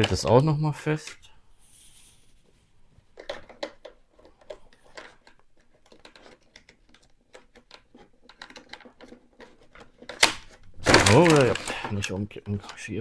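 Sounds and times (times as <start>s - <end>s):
plastic clicks and scratches: 0.0s - 1.4s, 3.0s - 13.0s.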